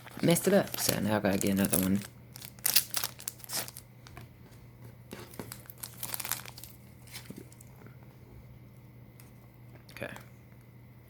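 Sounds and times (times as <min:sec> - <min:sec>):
foil pack crinkling and tearing: 0:00.0 - 0:03.9, 0:05.2 - 0:07.7.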